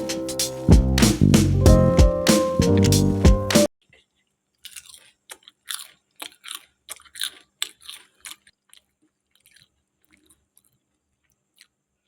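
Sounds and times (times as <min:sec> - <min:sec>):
crisp chips crunching: 0:03.8 - 0:12.0.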